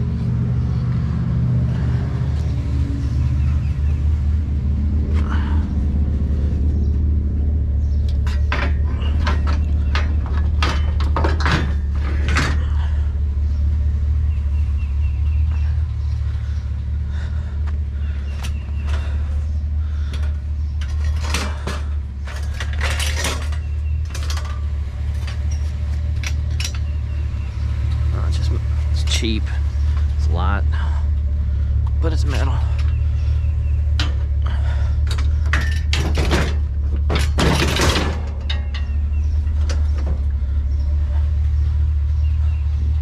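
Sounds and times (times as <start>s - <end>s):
vehicle engine idling: 0.0s - 43.0s
scrap metal clanking: 8.1s - 13.1s, 18.1s - 27.1s, 32.6s - 40.6s.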